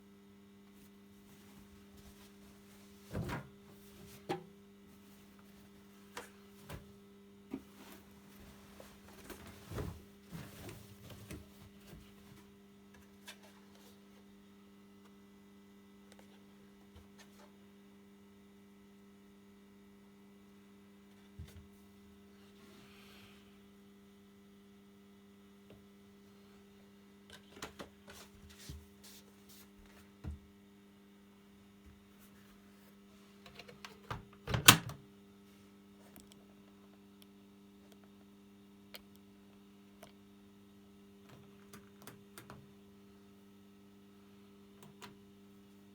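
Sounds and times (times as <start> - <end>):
washing machine humming: 0.7 - 14.1.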